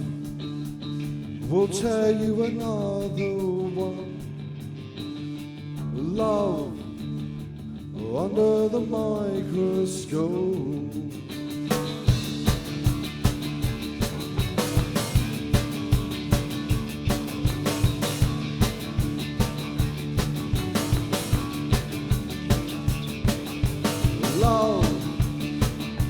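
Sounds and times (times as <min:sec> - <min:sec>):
guitar and bass chords: 0:00.0 - 0:26.0
drum beat: 0:11.7 - 0:26.0.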